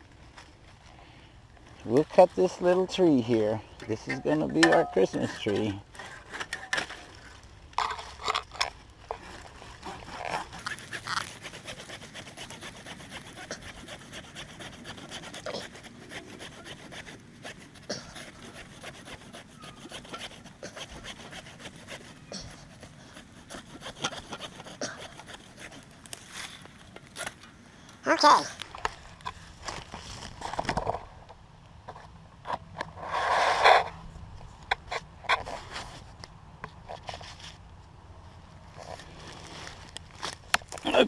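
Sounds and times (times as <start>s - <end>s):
hand saw cutting tree trunk: 2.1s - 7.0s, 7.8s - 27.4s.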